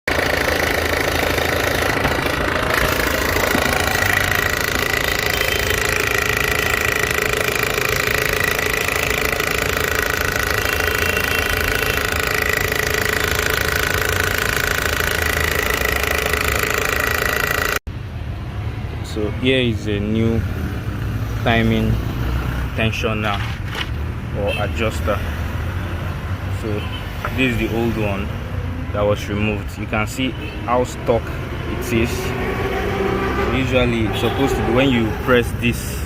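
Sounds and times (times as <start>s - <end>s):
engine idling with fast rattle: 0.0s - 17.8s.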